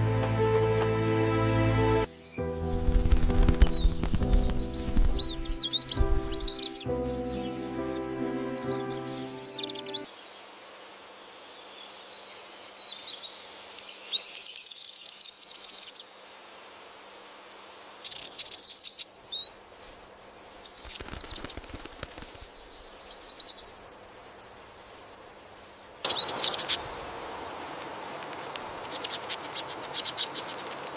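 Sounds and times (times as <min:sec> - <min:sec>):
bird twittering: 0:02.1 - 0:10.0.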